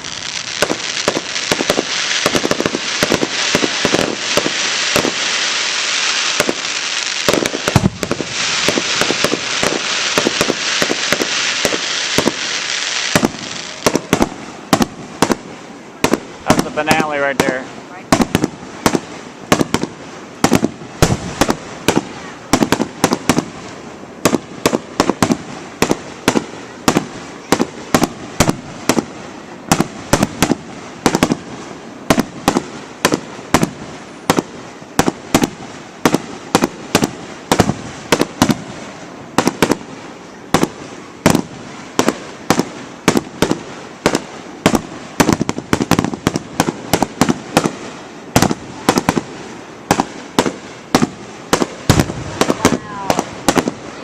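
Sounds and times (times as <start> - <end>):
fireworks bursting: 0.0 - 54.0
continuous rumble: 13.2 - 54.0.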